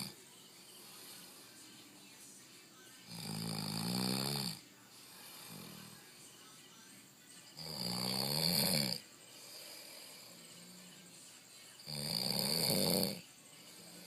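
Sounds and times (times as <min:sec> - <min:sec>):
quiet breathing: 0:00.0 - 0:14.0
person snoring loudly: 0:03.1 - 0:04.6, 0:05.2 - 0:06.0, 0:07.6 - 0:10.9, 0:11.8 - 0:14.0.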